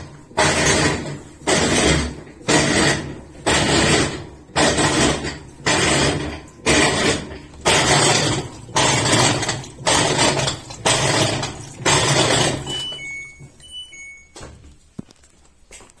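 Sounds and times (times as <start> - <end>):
washing machine swishing: 0.0 - 15.0
short electronic beeps: 12.7 - 14.5.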